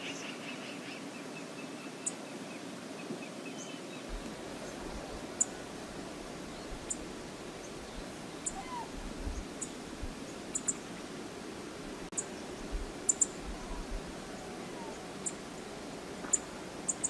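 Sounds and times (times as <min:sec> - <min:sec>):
river water rushing: 0:03.8 - 0:17.0
high ticks or chirps: 0:12.2 - 0:13.5.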